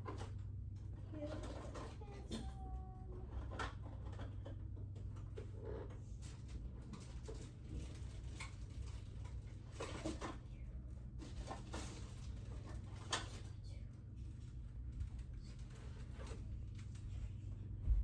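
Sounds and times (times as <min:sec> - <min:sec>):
steady low hum: 0:00.0 - 0:18.0
knocks and rustles in closet: 0:17.7 - 0:18.0.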